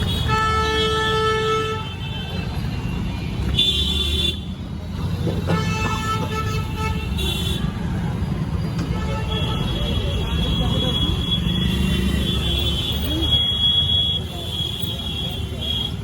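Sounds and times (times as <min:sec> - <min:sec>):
vehicle horns honking: 0:00.0 - 0:04.5, 0:05.5 - 0:07.9
street traffic engines: 0:00.0 - 0:16.0.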